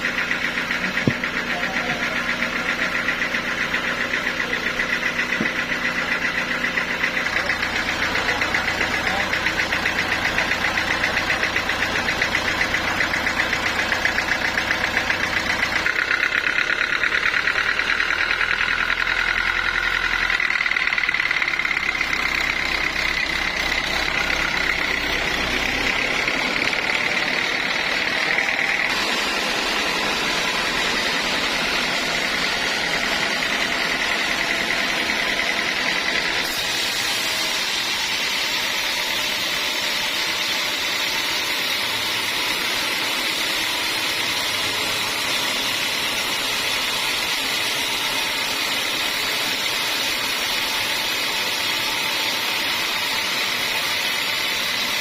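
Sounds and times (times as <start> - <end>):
machine pulsing drone: 0.0 - 40.7
saw cutting log whine: 0.0 - 55.0.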